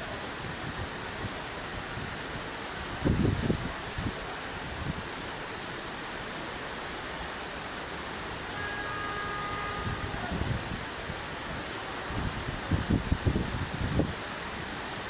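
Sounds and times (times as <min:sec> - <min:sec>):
steady rain hiss: 0:00.0 - 0:15.0
wind buffets on microphone: 0:00.1 - 0:05.2, 0:09.4 - 0:15.0.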